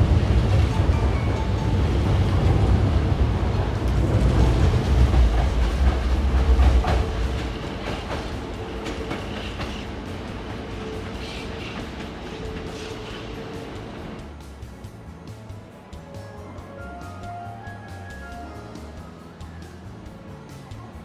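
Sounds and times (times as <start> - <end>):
train wheels clacking over rail joints: 0.0 - 14.5.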